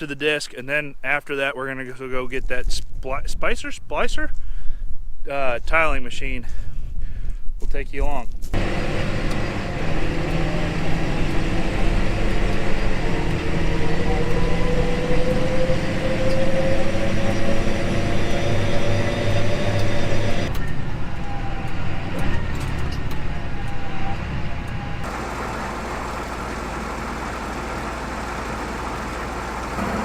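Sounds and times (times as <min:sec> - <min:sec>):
tractor diesel engine running: 0:08.6 - 0:21.3, 0:22.4 - 0:30.0
rising whine: 0:08.6 - 0:30.0.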